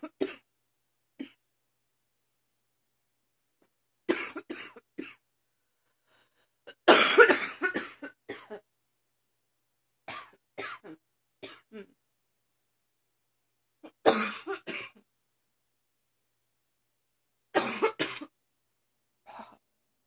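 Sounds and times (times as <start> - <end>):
woman coughing: 4.1 - 5.2, 6.7 - 8.6, 13.9 - 15.0, 17.6 - 18.3.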